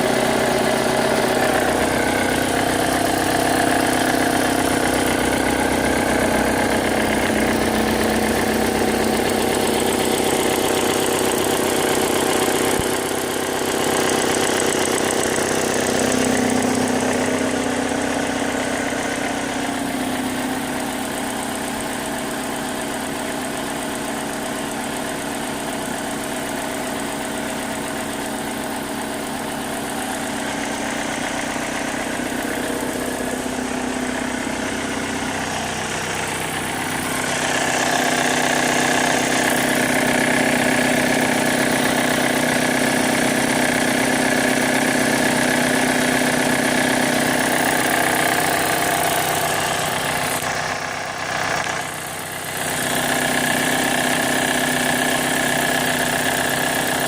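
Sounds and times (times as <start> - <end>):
car engine idling: 0.0 - 57.0.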